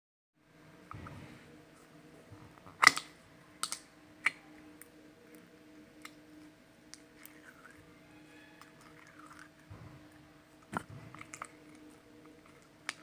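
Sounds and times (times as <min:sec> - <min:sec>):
faint steady hum: 0:00.4 - 0:13.0
slime clicking and popping: 0:02.8 - 0:04.4.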